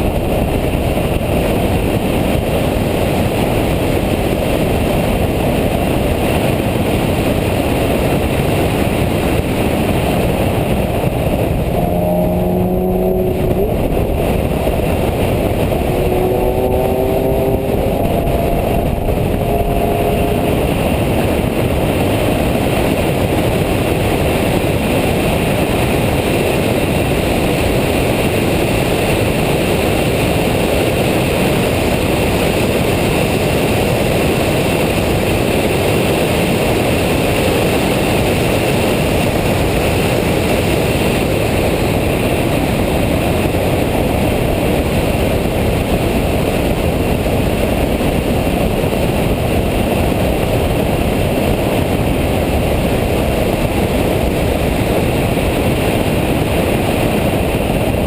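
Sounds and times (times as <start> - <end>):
car cabin engine and road noise: 0.0 - 30.3.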